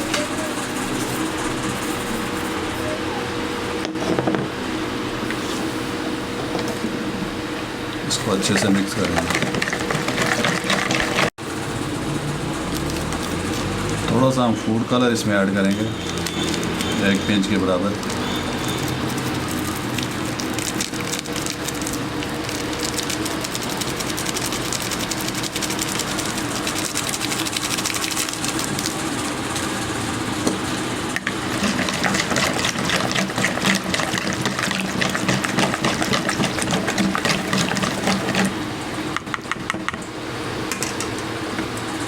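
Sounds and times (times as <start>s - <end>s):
spoon stirring in a bowl: 8.4s - 11.3s, 31.2s - 38.6s.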